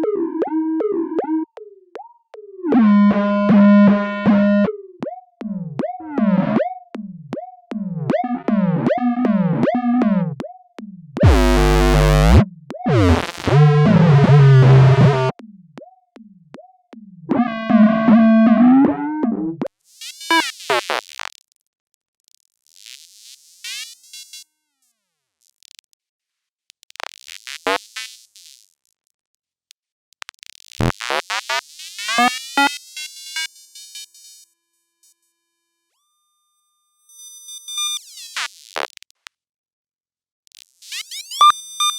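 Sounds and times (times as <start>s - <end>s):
warbling electronic chirps: 11.2s - 13.8s
loud harsh buzz: 11.2s - 15.3s
robot beeps and whistles: 40.9s - 41.9s.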